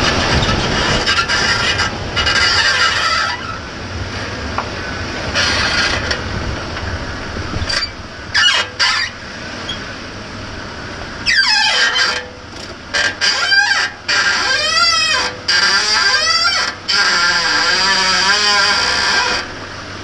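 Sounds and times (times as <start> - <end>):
high-pitched squeals: 0.0 - 3.8, 4.8 - 6.2, 7.6 - 9.9, 11.2 - 19.6
low rumble: 0.0 - 11.3.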